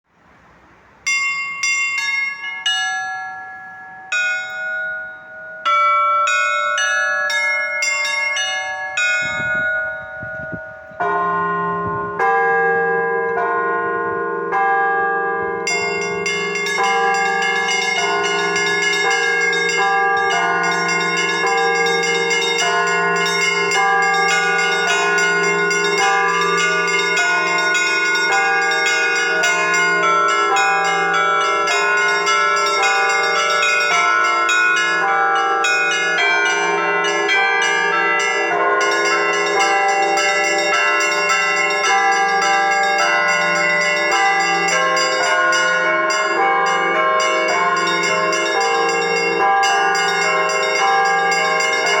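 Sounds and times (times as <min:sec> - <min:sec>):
small church bells ringing: 0:00.2 - 0:52.0
large low bell: 0:01.0 - 0:52.0.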